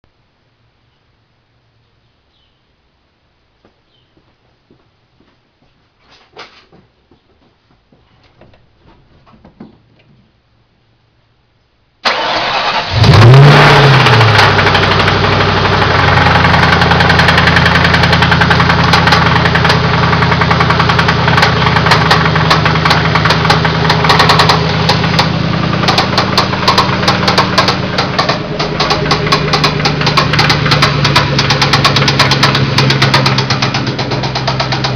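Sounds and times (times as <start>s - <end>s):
car engine cranking and idling: 12.0s - 34.9s
rapid metallic engine knock: 14.4s - 34.9s.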